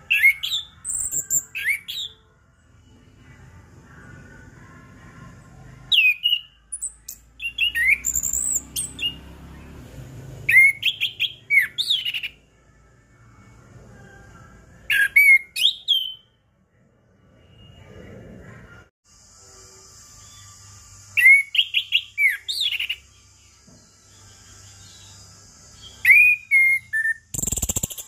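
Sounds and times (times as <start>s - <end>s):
thrush singing whistled phrases: 0.0s - 2.7s, 5.8s - 9.8s, 10.4s - 12.5s, 14.8s - 16.4s, 20.3s - 23.2s, 25.8s - 28.0s.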